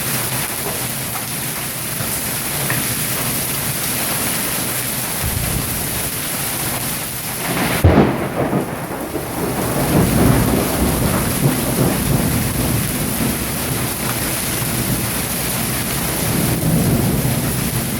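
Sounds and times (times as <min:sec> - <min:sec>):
hail and rain pelting: 0:00.0 - 0:17.9
thunder clap rumbling: 0:03.6 - 0:17.9.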